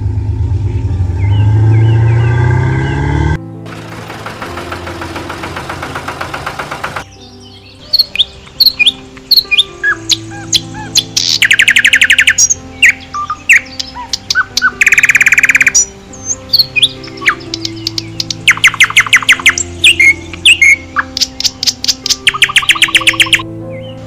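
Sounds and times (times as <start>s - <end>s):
slow music of held notes: 0.0s - 24.0s
small birds chirping: 6.3s - 24.0s
bird trills: 6.9s - 23.9s.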